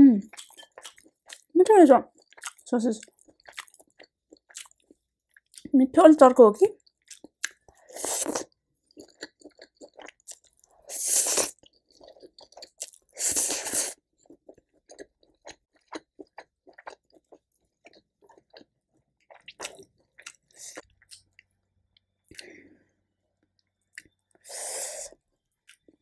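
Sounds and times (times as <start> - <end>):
soft wet chewing clicks: 0.3 - 5.7, 6.8 - 10.8, 11.5 - 13.0, 14.2 - 22.5, 23.4 - 24.4, 25.6 - 26.0
noisy bites or slurps: 7.9 - 8.5, 10.9 - 11.6, 13.2 - 14.0.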